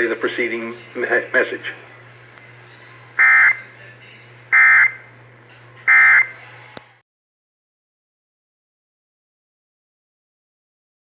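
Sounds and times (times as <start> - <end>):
steady low hum: 0.0 - 7.0
buzzing digital data tones: 3.2 - 3.6, 4.5 - 5.0, 5.6 - 6.4.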